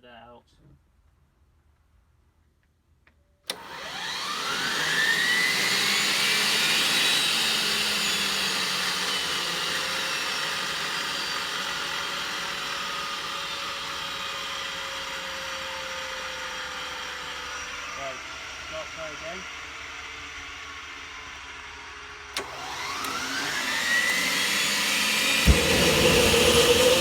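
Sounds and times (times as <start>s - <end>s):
turbine whine: 3.5s - 27.0s
rush of air: 25.5s - 27.0s.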